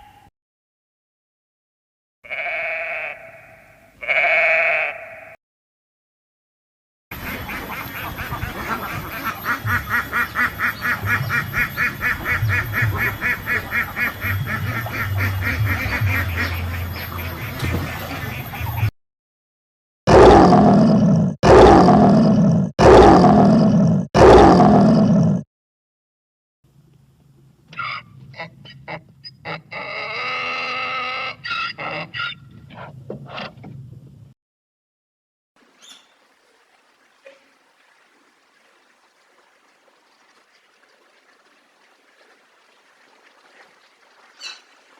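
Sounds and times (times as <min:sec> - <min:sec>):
duck quacking: 0:07.2 - 0:18.9
waterfowl honking: 0:07.2 - 0:18.9, 0:35.6 - 0:44.9.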